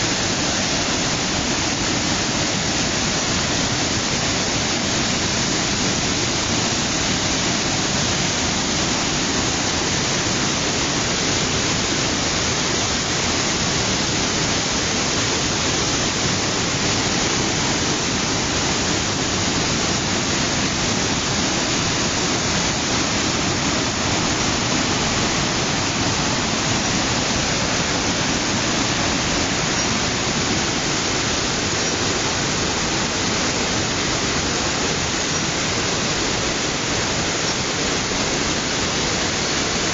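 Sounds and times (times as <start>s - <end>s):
waterfall pouring: 0.0s - 39.9s.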